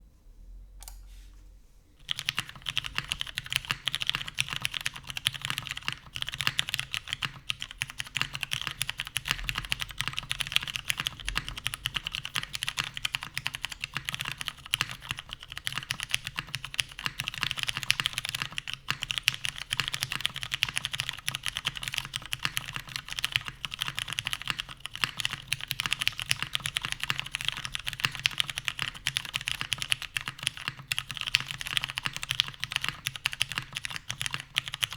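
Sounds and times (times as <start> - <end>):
mechanical keyboard typing: 2.0 - 34.9.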